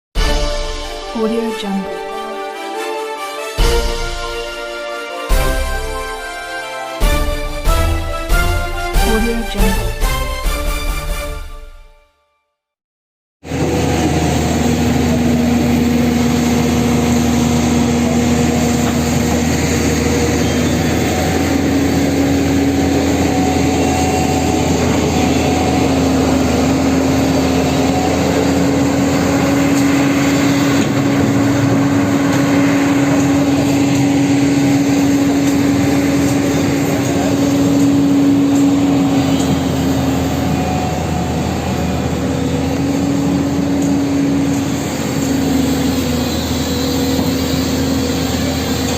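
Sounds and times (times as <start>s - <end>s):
engine humming steadily: 13.5s - 48.9s.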